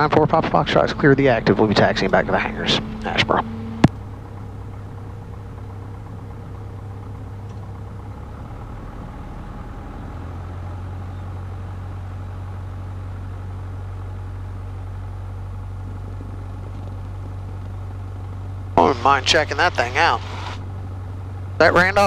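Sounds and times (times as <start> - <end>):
aircraft engine hum from cabin: 0.0 - 22.0.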